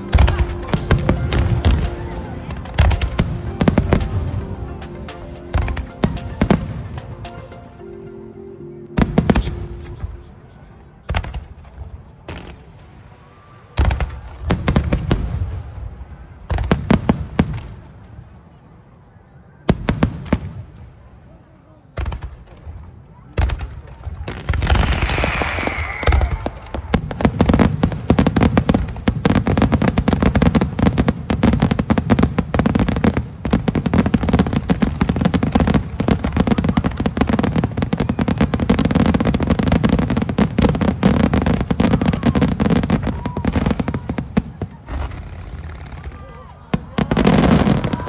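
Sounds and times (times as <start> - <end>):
fireworks booming and crackling: 0.0 - 7.5, 13.8 - 18.2, 19.7 - 20.9, 22.0 - 48.0
falling firework whistle: 24.7 - 27.0.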